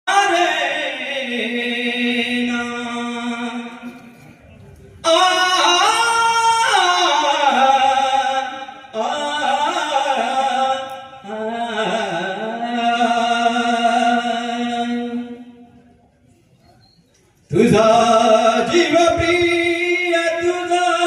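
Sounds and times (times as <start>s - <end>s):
person singing devotional song: 5.0s - 15.6s, 17.5s - 21.0s.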